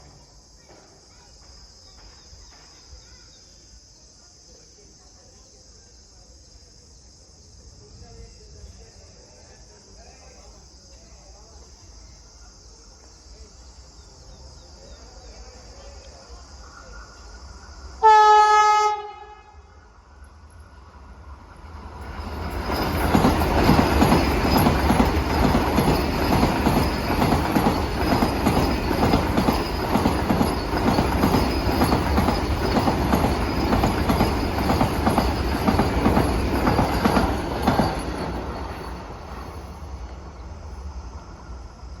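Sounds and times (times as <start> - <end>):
train horn blast: 18.0 - 19.7
rapid wheel clatter: 22.0 - 39.0.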